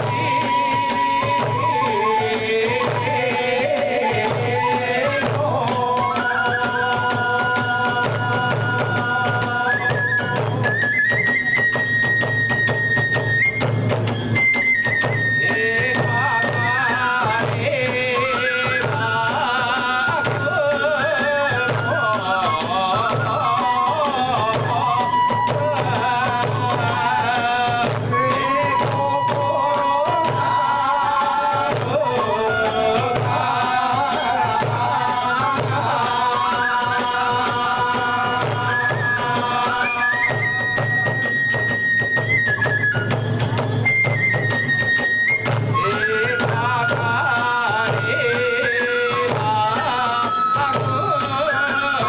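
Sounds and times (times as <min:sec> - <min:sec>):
taiko drum beats: 0:00.0 - 0:20.9, 0:21.6 - 0:48.4
bamboo flute melody: 0:00.0 - 0:52.0.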